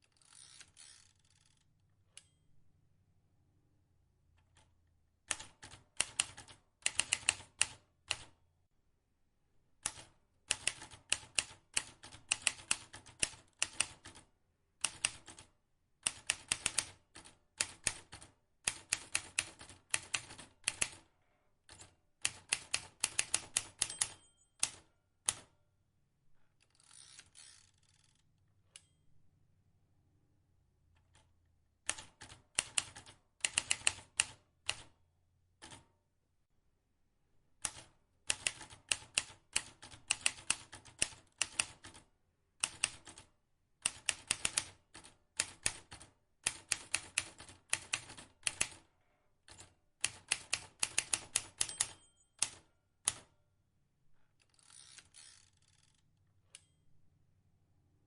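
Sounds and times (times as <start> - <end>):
typewriter keys clicking: 16.0 - 21.0, 21.7 - 25.5, 31.9 - 34.8, 37.6 - 42.0, 43.8 - 48.8, 49.5 - 53.3.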